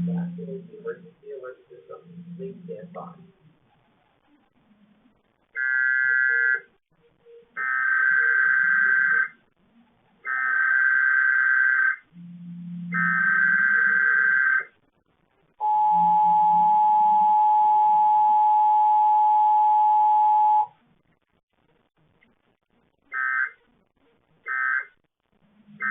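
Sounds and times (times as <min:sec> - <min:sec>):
two-tone attention signal: 0:00.0 - 0:00.7, 0:12.2 - 0:14.4, 0:15.6 - 0:20.7.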